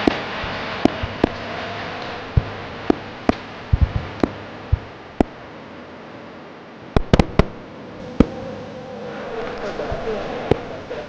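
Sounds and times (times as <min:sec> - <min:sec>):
fireworks bangs: 0:00.0 - 0:05.4, 0:07.0 - 0:08.4
background hiss: 0:00.0 - 0:11.0.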